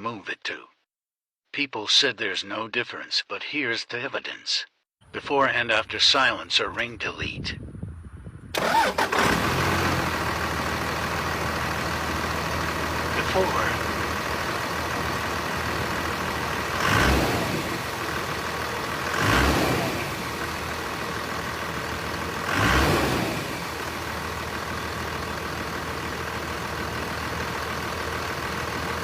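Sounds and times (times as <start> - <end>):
car engine idling: 8.6 - 29.0
engine revving blips: 8.6 - 29.0.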